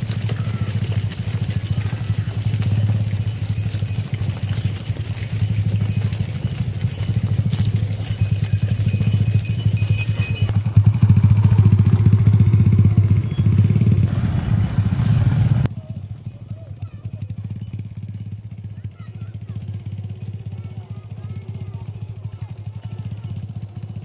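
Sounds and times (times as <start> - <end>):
small engine running: 0.0 - 24.0.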